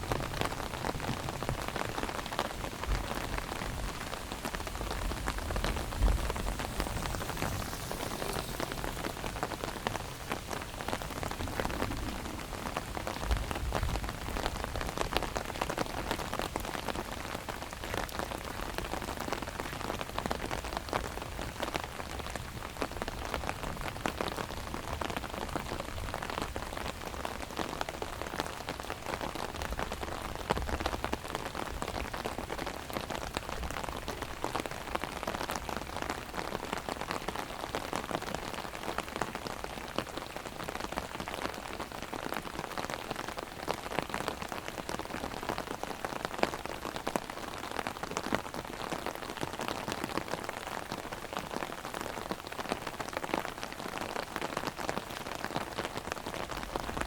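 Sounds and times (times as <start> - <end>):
heavy rain drumming on umbrella: 0.0 - 57.0.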